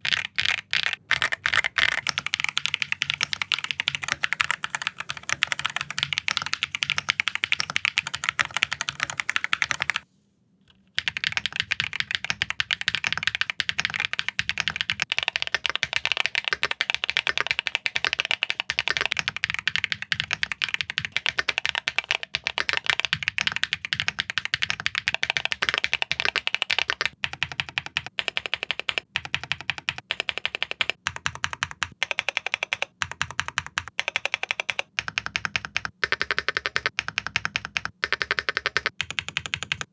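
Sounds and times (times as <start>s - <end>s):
mechanical keyboard typing: 0.0s - 10.0s, 10.9s - 39.9s.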